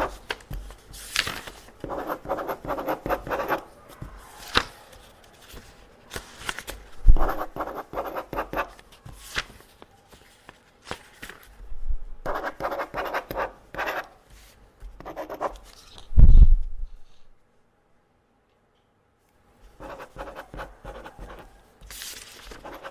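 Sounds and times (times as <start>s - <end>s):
pen scratching on paper: 1.8s - 3.7s, 7.1s - 8.7s, 12.2s - 14.2s, 15.0s - 15.6s, 19.8s - 21.5s, 22.5s - 22.9s.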